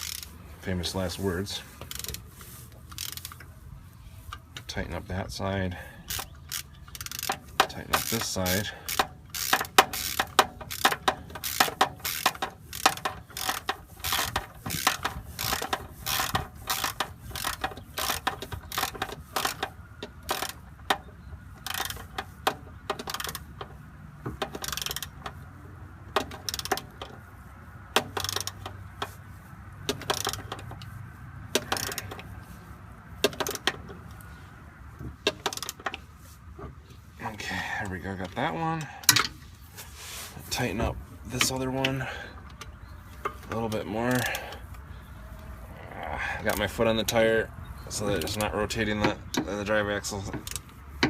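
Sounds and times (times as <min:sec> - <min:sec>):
socket ratchet clicking: 0:00.0 - 0:00.3, 0:02.8 - 0:03.5, 0:06.1 - 0:25.4, 0:26.1 - 0:27.2, 0:27.9 - 0:29.1, 0:29.8 - 0:30.9, 0:31.6 - 0:32.3.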